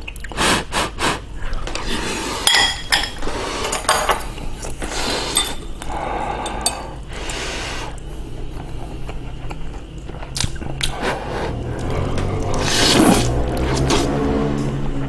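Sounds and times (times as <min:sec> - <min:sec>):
close-up eating noises: 0:00.0 - 0:15.0
utensils clinking against dishes: 0:01.6 - 0:07.1.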